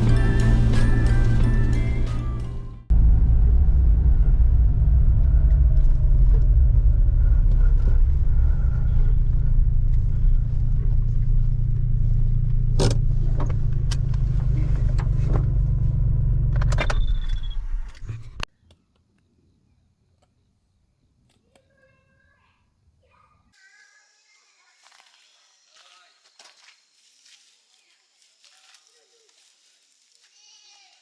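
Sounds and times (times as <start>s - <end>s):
car engine and road noise: 0.0s - 18.5s.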